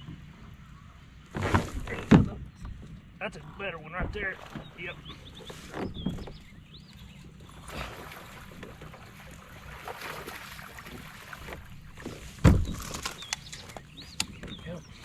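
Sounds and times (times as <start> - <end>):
water noise around kayak: 0.0 - 15.0
wind: 0.0 - 15.0
loud low thump: 12.4 - 12.8.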